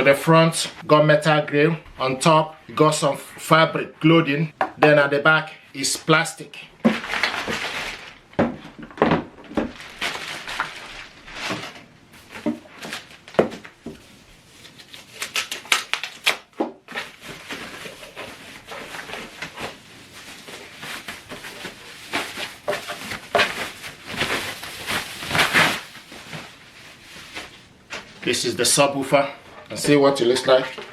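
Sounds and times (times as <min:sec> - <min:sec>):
parts being moved and set down: 0:06.8 - 0:14.0.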